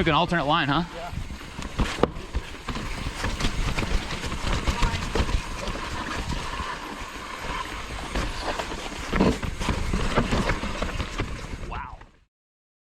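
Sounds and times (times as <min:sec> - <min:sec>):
bike knocking and rattling: 0:00.0 - 0:11.7
bike tyre noise: 0:00.0 - 0:12.2
wind rumbling on microphone: 0:00.0 - 0:12.2.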